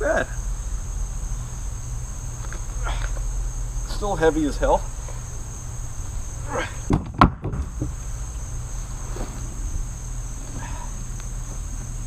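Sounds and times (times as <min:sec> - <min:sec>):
insects chirping: 0:00.0 - 0:12.0
wooden log knocks: 0:06.9 - 0:07.9.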